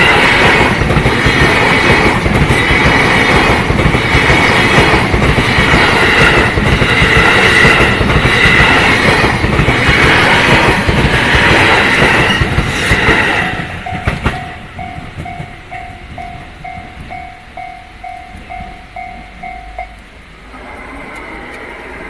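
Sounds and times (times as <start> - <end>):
train passing: 0.0 - 22.0
crossing warning bell dinging: 10.9 - 21.9.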